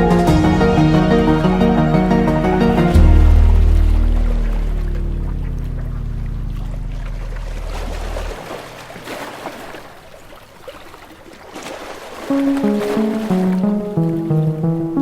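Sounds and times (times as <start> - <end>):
low held music chord: 0.0 - 6.7, 12.3 - 15.0.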